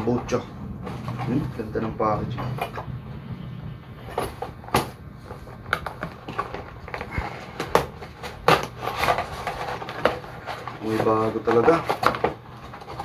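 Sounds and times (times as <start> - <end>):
packaging crackling and tapping: 4.0 - 13.0.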